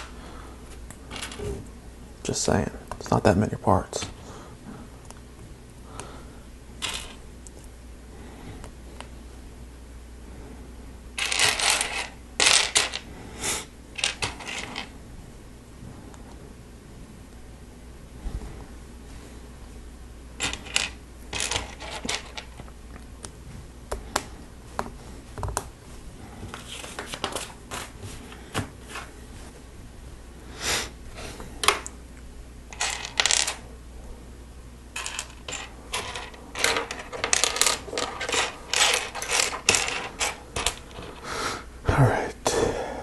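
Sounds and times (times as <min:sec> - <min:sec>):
plastic lego pieces clattering: 0:11.2 - 0:13.0, 0:20.4 - 0:22.6, 0:35.0 - 0:41.2.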